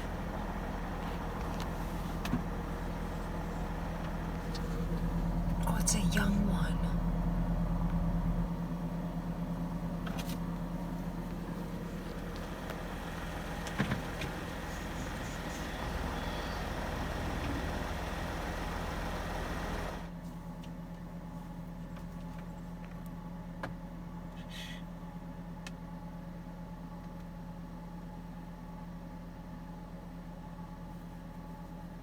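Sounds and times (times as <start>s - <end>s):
vehicle engine humming: 0.0s - 20.6s.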